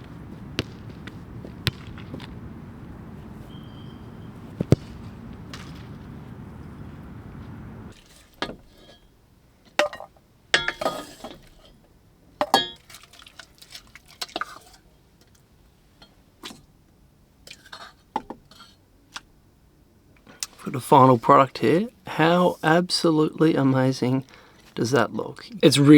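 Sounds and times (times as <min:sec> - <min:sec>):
low rushing noise: 0:00.0 - 0:07.9.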